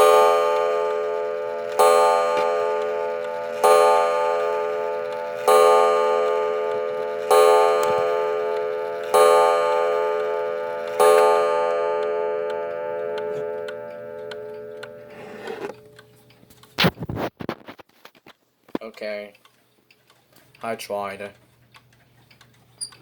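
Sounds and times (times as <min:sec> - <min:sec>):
wall clock striking: 0:00.0 - 0:16.0
clock ticking faintly: 0:00.0 - 0:16.8, 0:18.8 - 0:23.0.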